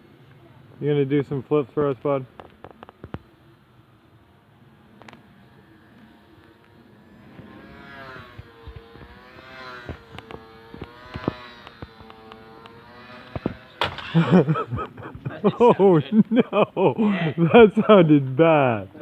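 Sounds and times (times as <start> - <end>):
model plane motor whining: 4.1 - 15.3
plane crash impact: 13.5 - 14.6.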